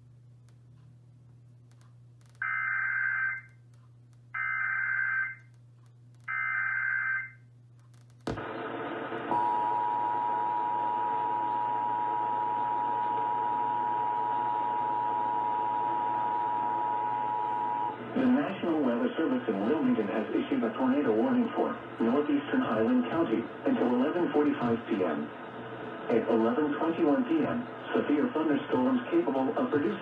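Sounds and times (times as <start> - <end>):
click: 1.7 - 2.4, 3.5 - 4.2, 5.4 - 6.3
steady two-tone attention signal: 9.3 - 17.9.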